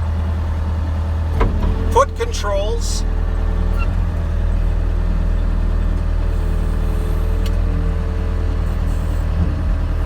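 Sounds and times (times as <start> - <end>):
diesel engine idling: 0.0 - 10.0.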